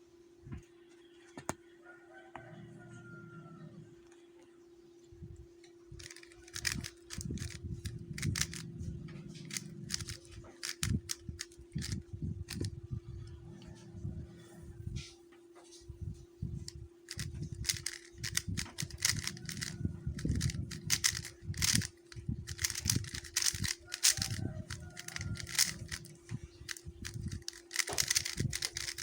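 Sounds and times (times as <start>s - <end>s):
faint hum: 0.0s - 29.0s
puzzle cube clicking: 6.0s - 8.6s, 9.4s - 12.7s, 17.1s - 29.0s.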